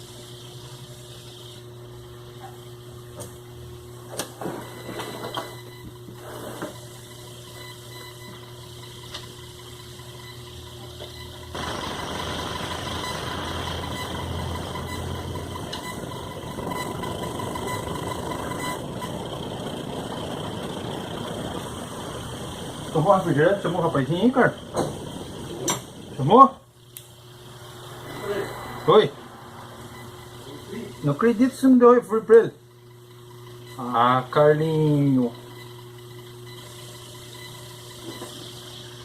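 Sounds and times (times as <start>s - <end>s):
sewing machine motor humming: 11.5s - 26.4s.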